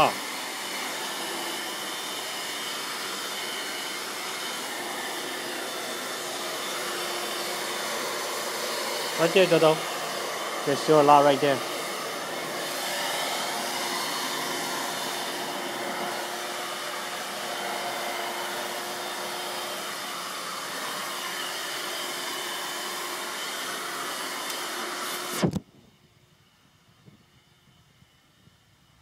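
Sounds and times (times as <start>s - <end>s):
vacuum cleaner humming: 0.0s - 25.6s
thump of vacuum cutting off: 24.4s - 25.7s.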